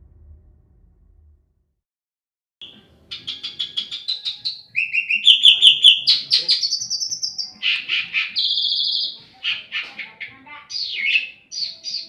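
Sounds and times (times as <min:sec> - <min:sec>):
bird singing whistled notes: 0:02.6 - 0:09.2, 0:10.7 - 0:12.0.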